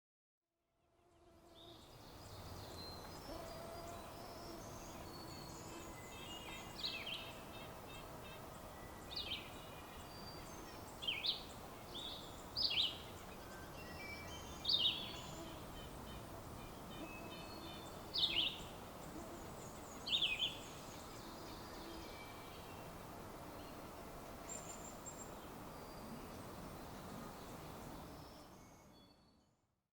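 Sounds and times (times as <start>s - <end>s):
songbird chorus: 1.4s - 29.6s.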